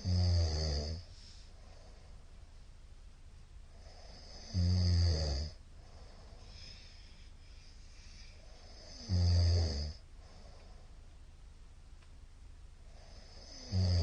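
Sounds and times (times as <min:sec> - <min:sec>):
man snoring: 0:00.0 - 0:01.1, 0:03.8 - 0:05.6, 0:08.1 - 0:10.0, 0:13.0 - 0:14.0
faint breath out: 0:05.8 - 0:08.8.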